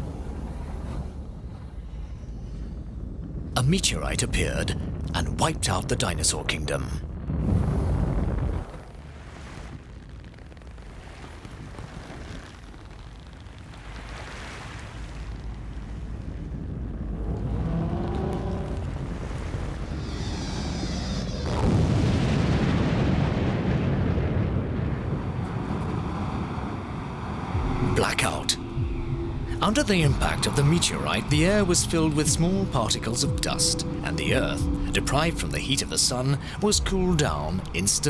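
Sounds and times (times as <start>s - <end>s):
deep rumble: 0.0s - 38.0s
deep blast: 2.2s - 9.0s, 15.6s - 38.0s.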